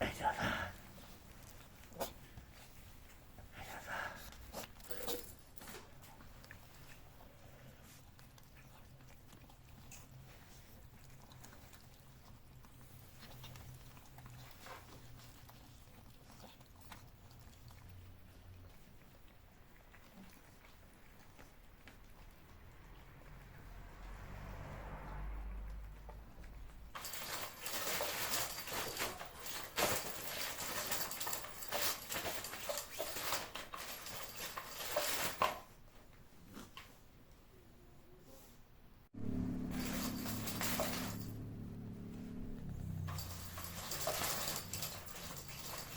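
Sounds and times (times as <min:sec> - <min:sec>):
kittens chewing: 0:00.6 - 0:24.3.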